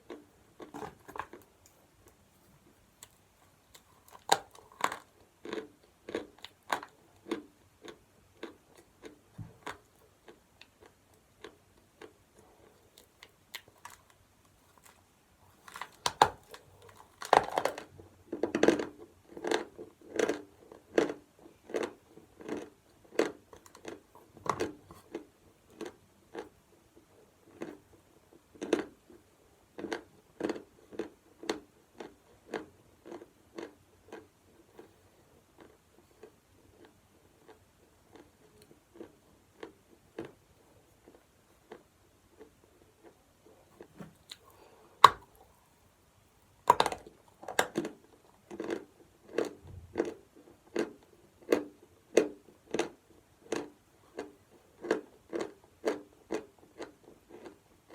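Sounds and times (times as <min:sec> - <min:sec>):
person chewing chalk: 0:46.7 - 0:57.9.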